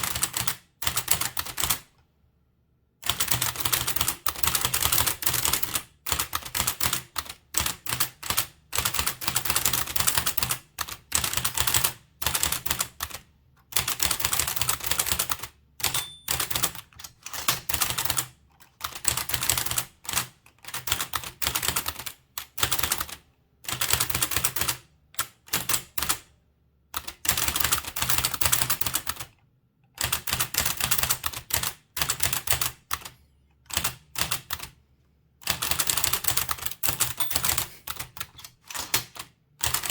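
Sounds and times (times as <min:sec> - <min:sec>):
typewriter keystrokes clacking: 0:13.8 - 0:18.3, 0:35.5 - 0:39.9.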